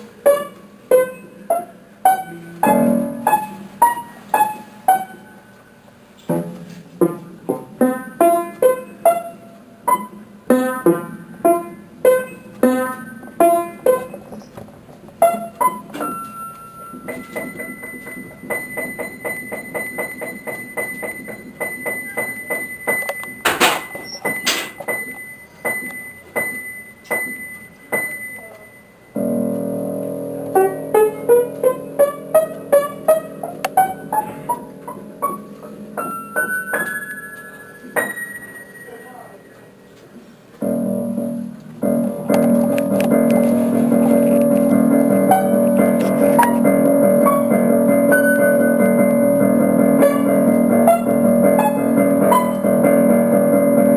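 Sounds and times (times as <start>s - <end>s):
piano music: 0.0s - 6.1s, 7.0s - 39.7s, 40.6s - 53.9s.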